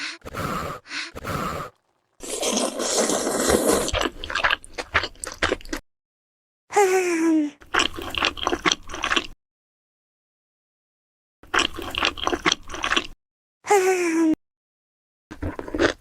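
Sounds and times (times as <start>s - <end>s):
squishy slurping bites: 0.3s - 5.8s, 7.6s - 9.4s, 11.4s - 13.2s.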